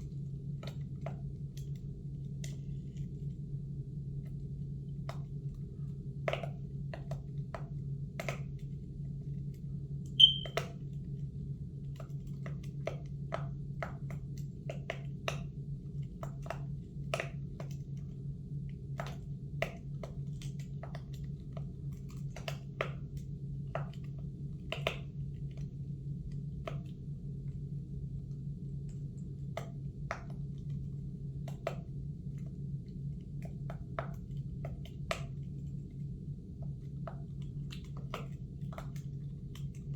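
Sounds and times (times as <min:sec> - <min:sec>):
low hum: 0:10.2 - 0:10.6
sharp high beep: 0:10.2 - 0:10.6.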